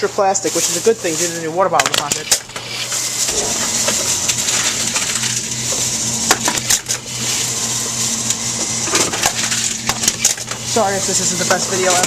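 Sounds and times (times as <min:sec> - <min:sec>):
machine motor hum: 0:03.0 - 0:12.0.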